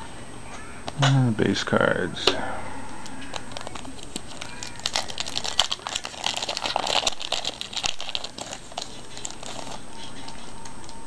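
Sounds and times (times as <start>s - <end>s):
wrapper crinkling and rustling: 3.2s - 10.9s.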